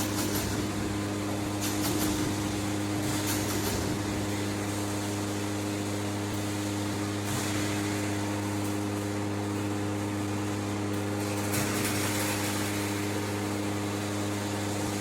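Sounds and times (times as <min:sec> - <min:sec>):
welding machine electrical hum: 0:00.0 - 0:15.0.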